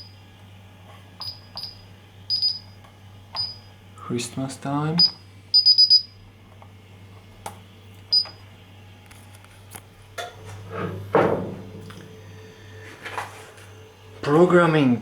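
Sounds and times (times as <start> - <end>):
low steady hum: 0.0 - 15.0
keypad beep: 1.2 - 2.6, 3.4 - 3.6, 5.0 - 6.1.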